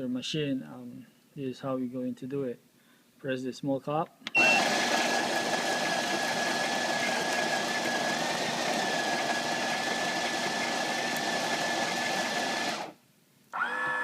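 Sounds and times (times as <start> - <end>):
machine tone: 4.4 - 4.8
coffee machine whirring: 4.4 - 13.0.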